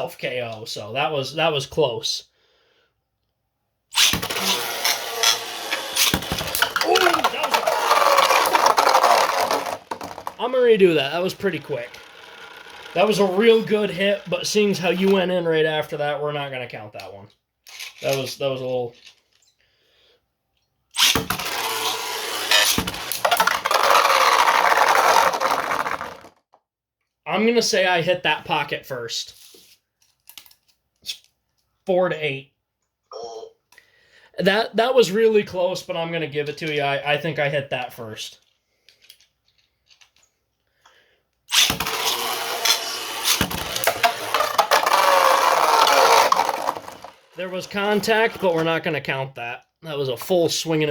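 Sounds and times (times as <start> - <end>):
spinning tops launched: 3.9 - 15.1, 21.0 - 26.3, 41.5 - 48.6
spinning tops clattering in plastic stadium: 4.0 - 14.7, 21.0 - 26.3, 41.6 - 48.6.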